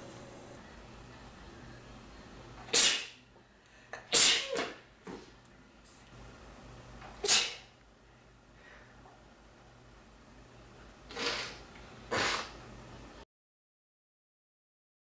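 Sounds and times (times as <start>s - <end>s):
man sneezing: 2.7s - 3.2s, 4.1s - 4.7s, 7.2s - 7.7s.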